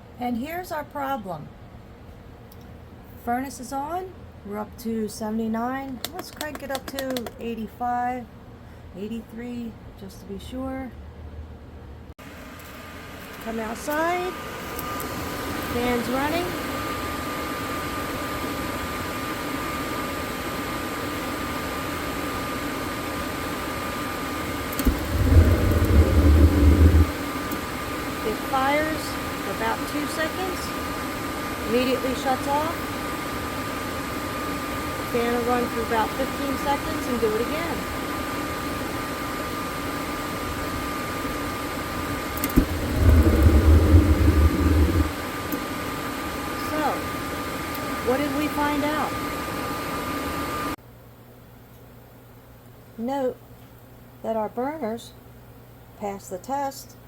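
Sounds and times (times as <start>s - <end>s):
furnace blower fan whining: 1.0s - 50.8s
burner lighting with low rumble: 24.5s - 28.3s, 39.9s - 45.6s
burner igniting with low rumble: 24.5s - 48.5s.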